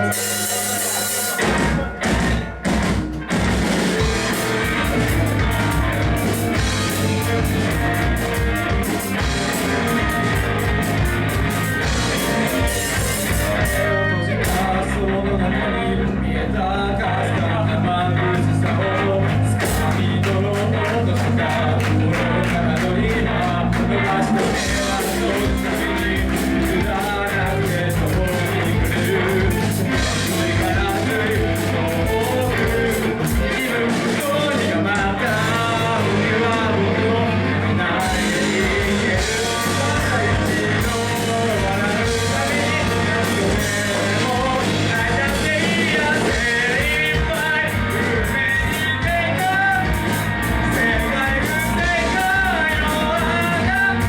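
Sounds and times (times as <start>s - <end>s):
rock band playing: 0.0s - 54.0s.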